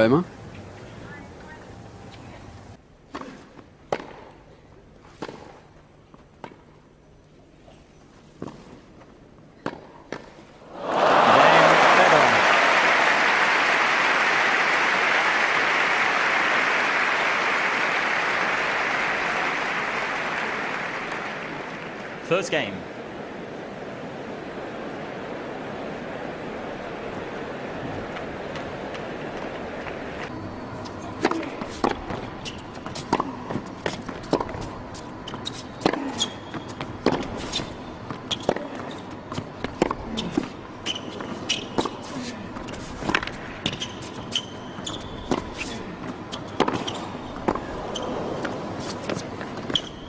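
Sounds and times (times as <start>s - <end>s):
tennis ball hit by rackets: 3.1s - 4.3s, 46.6s - 47.7s
crowd applauding: 10.7s - 30.3s
shoes squeaking on court: 28.1s - 50.0s.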